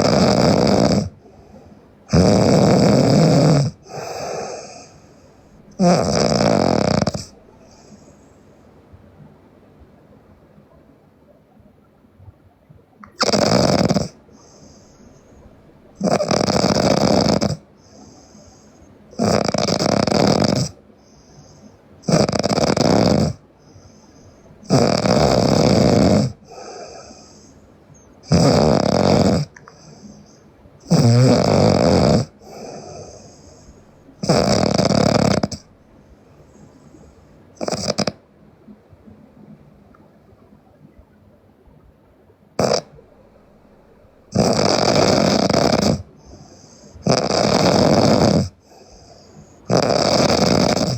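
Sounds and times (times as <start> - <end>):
woman snoring loudly: 0.0 - 1.1, 2.1 - 5.0, 5.8 - 7.3, 13.1 - 14.2, 16.0 - 17.6, 19.1 - 20.8, 22.0 - 23.4, 24.6 - 27.2, 28.2 - 29.5, 30.8 - 33.3, 34.2 - 35.7, 37.6 - 38.2, 42.6 - 42.9, 44.3 - 46.1, 47.0 - 48.6, 49.7 - 50.9
soft breath: 1.1 - 2.1, 3.8 - 5.9, 7.3 - 9.4, 14.1 - 16.0, 17.6 - 19.2, 20.7 - 22.0, 23.4 - 24.7, 26.3 - 28.3, 29.4 - 30.9, 32.3 - 34.5, 35.5 - 40.8, 46.0 - 47.1, 48.5 - 49.7.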